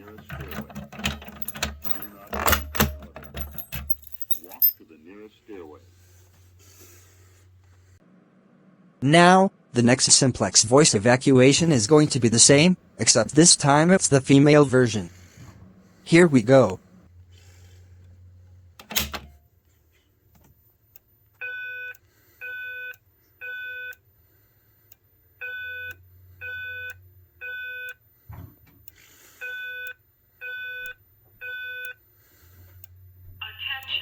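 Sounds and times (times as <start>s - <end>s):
fire alarm beeps: 20.6s - 24.0s, 25.1s - 33.9s.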